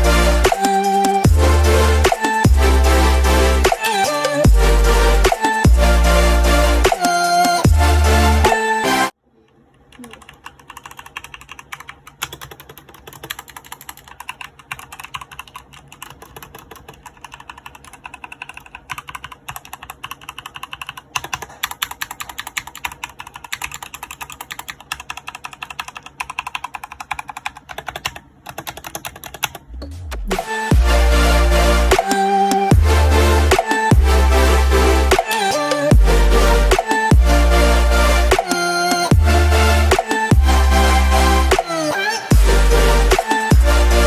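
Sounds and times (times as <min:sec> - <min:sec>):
typing on mechanical keyboard: 0:09.9 - 0:29.6.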